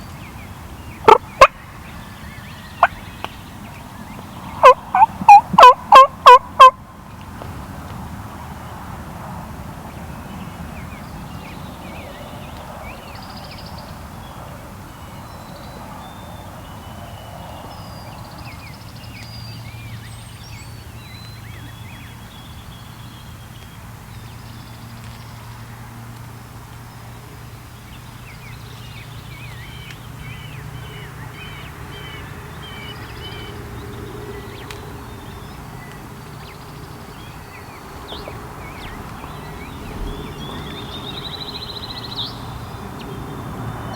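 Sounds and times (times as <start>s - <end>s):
songbirds chirping: 0.0s - 7.5s, 9.7s - 43.9s
low outdoor rumble: 25.0s - 43.9s.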